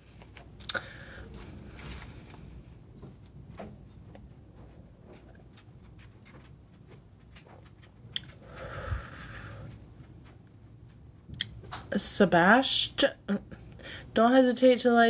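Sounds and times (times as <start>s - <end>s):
breathy exhale: 0.7s - 1.4s, 8.4s - 9.7s.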